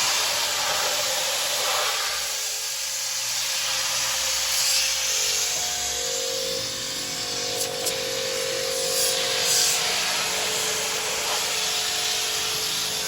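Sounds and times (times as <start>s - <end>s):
compressed air hissing: 0.0s - 5.6s, 6.5s - 13.0s.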